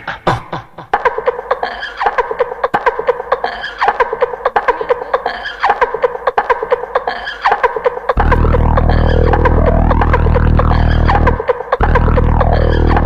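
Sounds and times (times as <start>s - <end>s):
rapid clicking percussion: 5.9s - 13.0s
looped vocal-like phrase: 8.2s - 13.0s.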